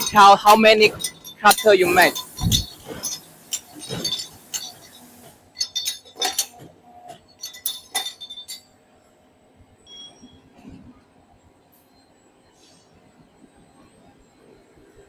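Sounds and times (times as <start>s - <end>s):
metal clips clinking: 0.0s - 6.7s, 7.4s - 8.7s.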